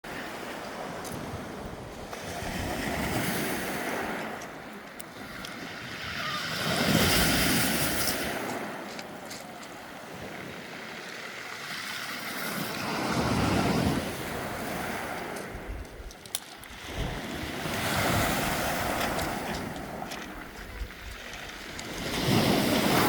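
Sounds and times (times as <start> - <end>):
surf breaking on beach: 0.1 - 9.0, 16.6 - 23.0.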